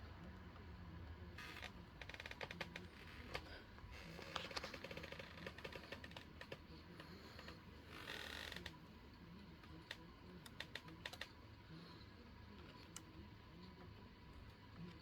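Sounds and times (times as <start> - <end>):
faint sharp clicks and ticks: 9.6 - 11.4.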